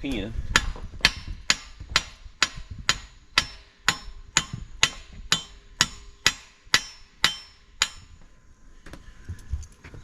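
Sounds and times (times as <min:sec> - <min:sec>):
hammer striking steel pin: 0:00.5 - 0:08.2.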